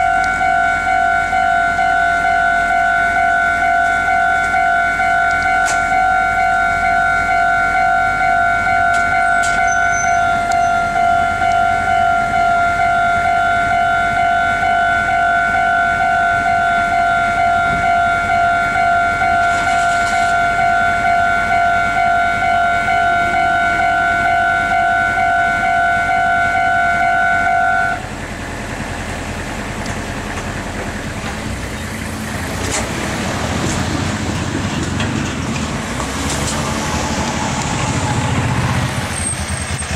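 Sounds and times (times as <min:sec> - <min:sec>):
level crossing warning bell: 0:00.0 - 0:28.8
low vehicle rumble: 0:00.0 - 0:39.9.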